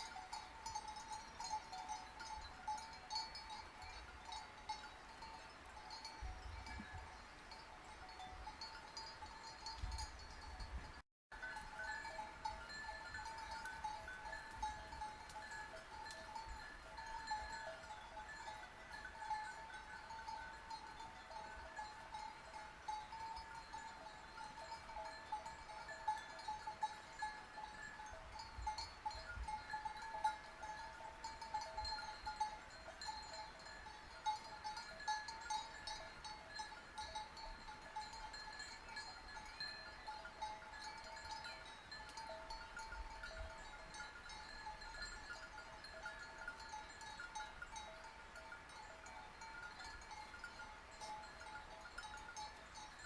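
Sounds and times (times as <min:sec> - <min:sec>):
sheep bells jangling: 0:00.0 - 0:53.0.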